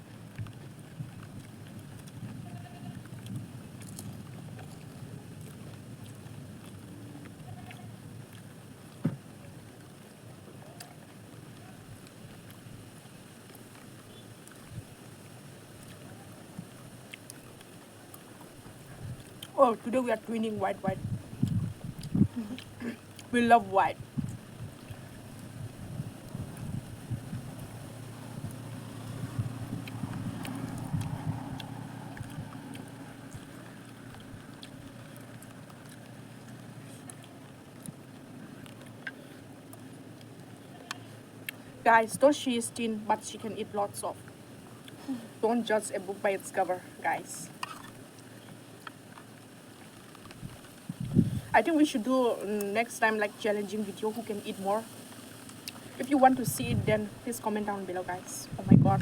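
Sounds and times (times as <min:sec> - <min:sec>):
wind buffeting microphone: 0:20.5 - 0:22.6, 0:23.6 - 0:34.5, 0:50.3 - 0:51.6, 0:56.3 - 0:57.2, 0:58.3 - 0:59.0.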